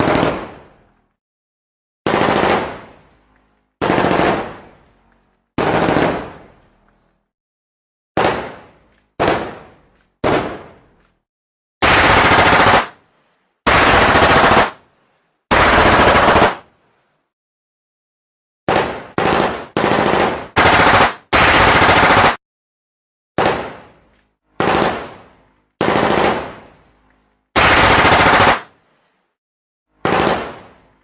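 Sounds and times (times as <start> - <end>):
automatic gunfire bursts: 0.0 - 0.5, 2.1 - 2.8, 3.8 - 4.6, 5.6 - 6.4, 11.8 - 13.0, 13.7 - 14.8, 15.5 - 16.6, 18.7 - 22.4, 24.6 - 25.1, 25.8 - 26.6, 27.6 - 28.7, 30.0 - 30.6.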